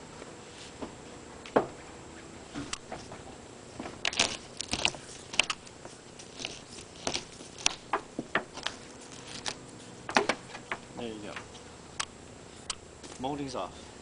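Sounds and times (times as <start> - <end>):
rubber strip crackling and clicking: 4.0 - 9.6.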